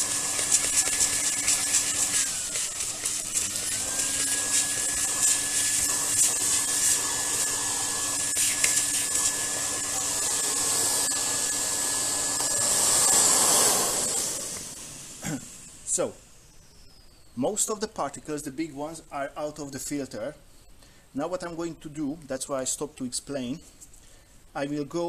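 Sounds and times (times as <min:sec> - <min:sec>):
vacuum cleaner motor whine: 0:00.0 - 0:16.1.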